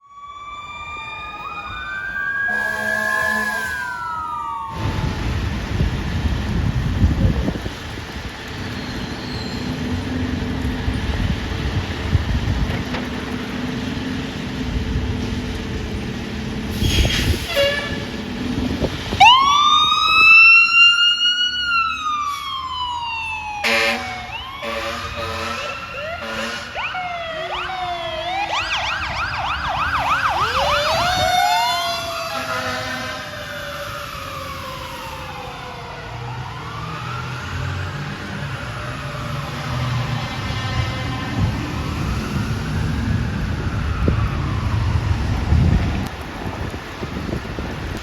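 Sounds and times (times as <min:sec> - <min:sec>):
siren winding up and falling: 0:00.0 - 0:05.4, 0:19.2 - 0:32.8
fire truck siren wailing: 0:00.0 - 0:48.0
heavy truck rumble: 0:01.2 - 0:20.8, 0:21.6 - 0:48.0
air horn blasts: 0:02.5 - 0:04.0, 0:16.8 - 0:18.2, 0:23.6 - 0:26.9, 0:32.3 - 0:33.3.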